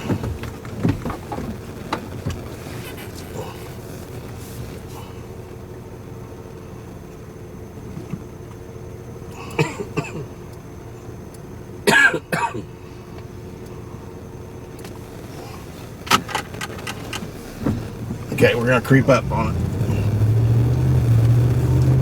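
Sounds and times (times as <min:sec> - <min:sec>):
vehicle interior running noise: 0:00.0 - 0:22.0
person coughing: 0:09.4 - 0:10.3, 0:11.9 - 0:12.7.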